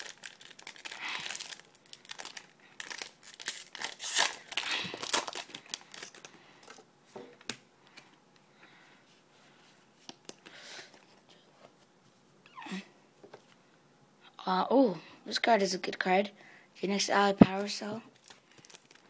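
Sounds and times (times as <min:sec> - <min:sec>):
foil wrappers crinkling and tearing: 0:00.0 - 0:06.8, 0:18.1 - 0:19.0.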